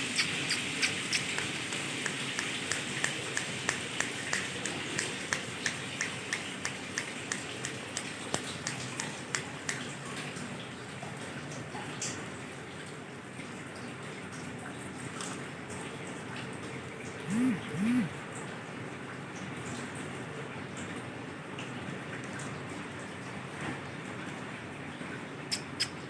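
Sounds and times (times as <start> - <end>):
parakeet clicking: 0.0 - 9.8, 17.3 - 18.1, 25.5 - 26.0.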